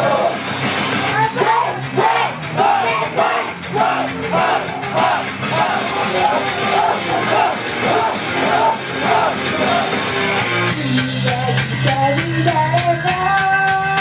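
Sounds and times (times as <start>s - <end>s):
live rock pop song with band: 6.9s - 14.0s.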